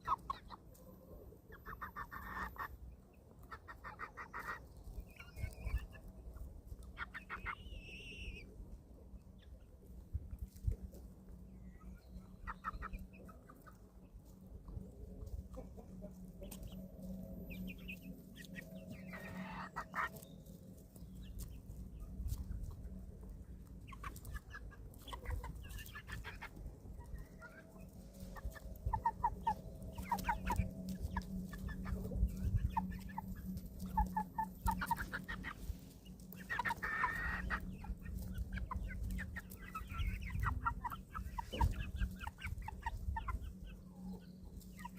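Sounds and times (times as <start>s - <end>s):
chicks clucking and calling: 0.0s - 44.9s
low steady hum: 4.6s - 44.9s.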